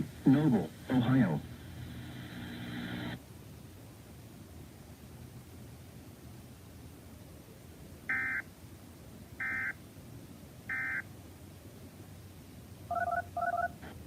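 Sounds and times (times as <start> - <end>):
short beeps: 8.1 - 8.4, 9.4 - 9.7, 10.7 - 11.0.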